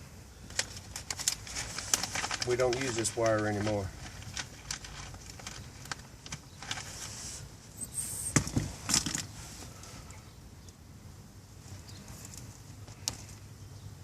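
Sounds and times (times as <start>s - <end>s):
clicks and rustles of handling wires: 0.4s - 7.5s, 8.4s - 10.1s, 11.7s - 13.5s.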